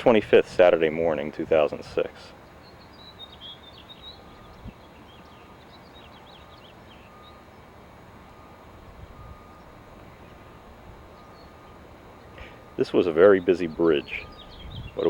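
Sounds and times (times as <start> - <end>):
small birds chirping: 0.3 - 8.5, 9.2 - 15.0.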